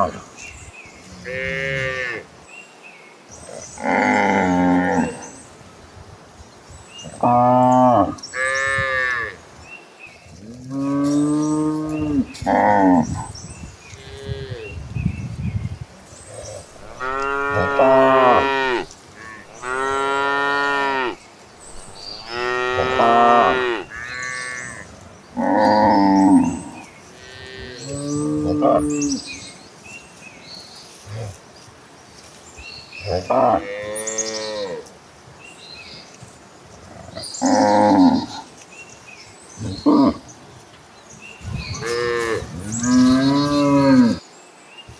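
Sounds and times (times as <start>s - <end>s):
cows mooing: 1.1s - 2.3s, 3.8s - 5.2s, 16.4s - 21.2s, 21.9s - 29.3s, 33.1s - 34.9s, 36.9s - 38.6s, 41.7s - 44.2s.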